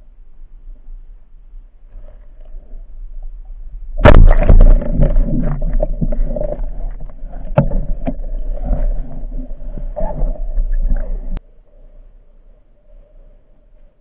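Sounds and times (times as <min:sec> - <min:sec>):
knocks and scrapes: 0:04.0 - 0:11.4.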